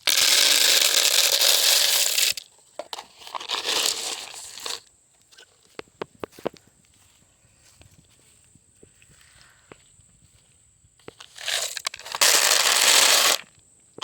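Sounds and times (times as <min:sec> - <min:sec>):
corn kernels pouring into bowls: 0:00.0 - 0:02.4, 0:03.3 - 0:04.8, 0:11.4 - 0:13.5.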